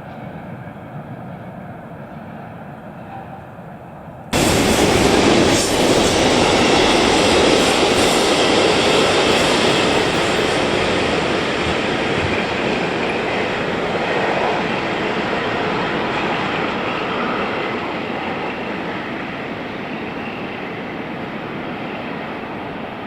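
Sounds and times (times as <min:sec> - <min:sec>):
freight train rumbling past: 0:00.0 - 0:23.0
wheels rattling on rails: 0:04.4 - 0:21.0.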